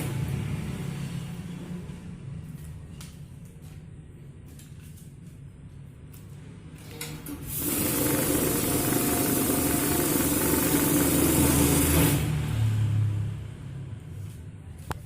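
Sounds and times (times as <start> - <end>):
counting machine hiss and hum: 7.5 - 12.4.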